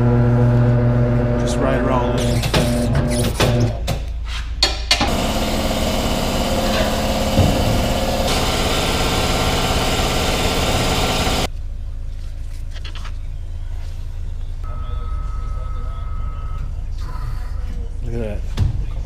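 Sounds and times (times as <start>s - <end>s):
motor-driven machine running: 5.0s - 11.5s.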